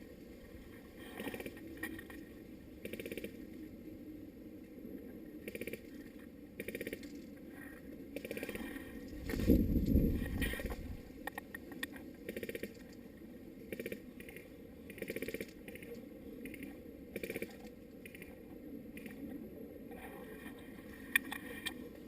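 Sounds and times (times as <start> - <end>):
airsoft guns rapid clicking: 6.6 - 7.2, 12.3 - 13.0, 13.7 - 15.8
heavy low thump and rumble: 9.2 - 11.1.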